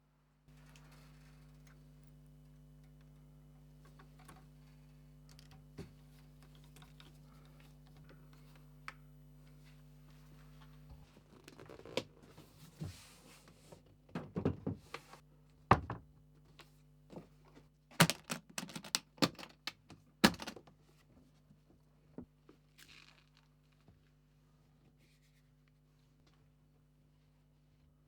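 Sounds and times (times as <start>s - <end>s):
faint low hum: 0.0s - 17.9s.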